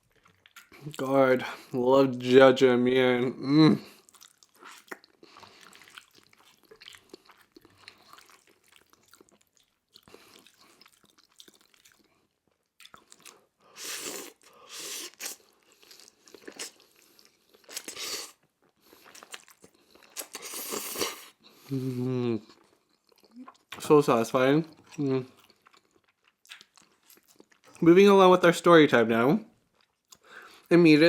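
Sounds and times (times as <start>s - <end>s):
chewing mouth sounds: 0.0s - 1.0s, 3.9s - 21.4s, 24.7s - 27.8s.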